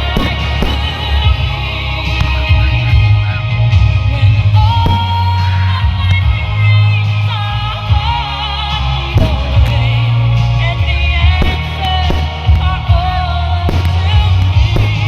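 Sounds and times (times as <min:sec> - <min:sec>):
heavy bass line: 0:00.0 - 0:15.0
person singing: 0:00.0 - 0:15.0
sharp hits: 0:04.8 - 0:05.2.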